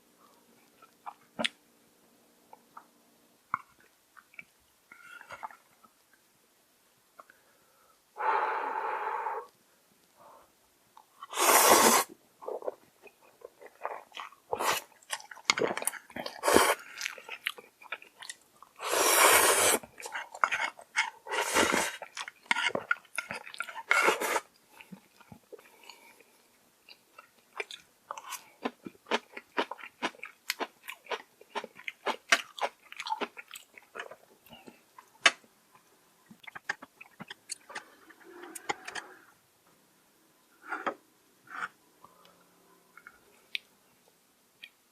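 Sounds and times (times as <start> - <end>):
person chewing and crunching food: 0.7 - 1.6, 12.4 - 39.1.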